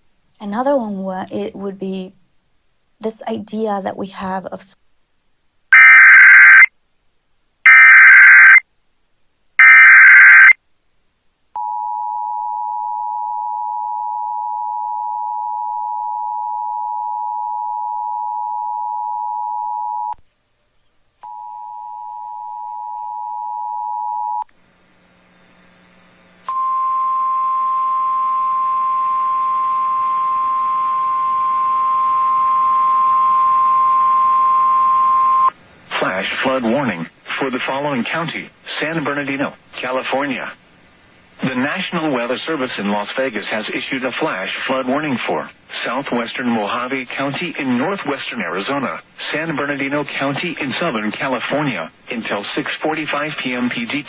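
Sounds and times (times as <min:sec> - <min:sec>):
harsh data bursts: 0:05.7 - 0:06.7, 0:07.7 - 0:08.6, 0:09.6 - 0:10.6
radio hiss: 0:05.8 - 0:06.7, 0:07.7 - 0:08.6, 0:09.6 - 0:10.6, 0:35.8 - 0:40.6, 0:41.4 - 0:54.0
two-tone attention signal: 0:05.8 - 0:06.7, 0:07.7 - 0:08.6, 0:09.6 - 0:10.6.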